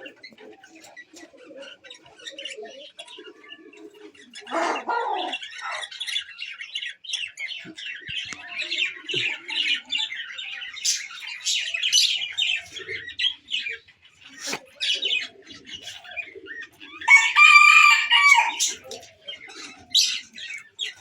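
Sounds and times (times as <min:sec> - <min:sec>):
chickens chirping: 0:00.0 - 0:21.0
chicken squawk: 0:03.2 - 0:05.9, 0:14.2 - 0:20.3.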